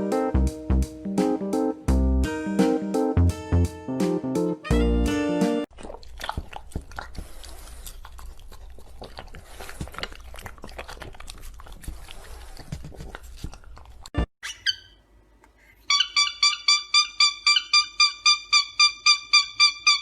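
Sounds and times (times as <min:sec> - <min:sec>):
animal chewing crunchy food: 0:05.7 - 0:14.2.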